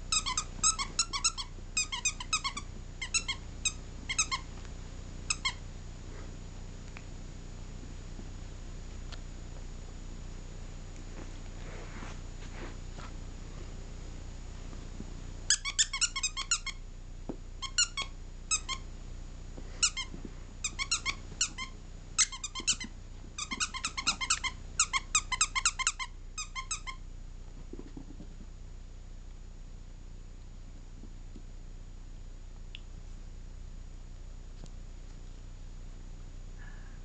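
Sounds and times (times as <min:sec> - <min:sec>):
squeaky toy squeaking: 0:00.1 - 0:04.4, 0:05.3 - 0:05.6, 0:15.5 - 0:16.8, 0:17.6 - 0:18.8, 0:20.7 - 0:27.0.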